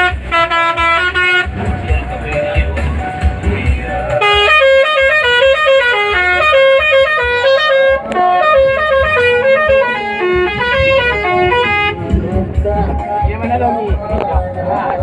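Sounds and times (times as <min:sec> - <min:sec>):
bus horn playing a tune: 0:00.0 - 0:01.8, 0:04.1 - 0:12.6.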